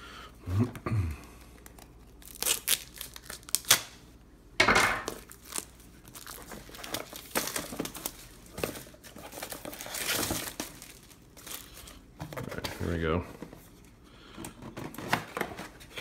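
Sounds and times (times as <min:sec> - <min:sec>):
packaging crinkling and ripping: 0:01.3 - 0:04.0, 0:05.1 - 0:13.0.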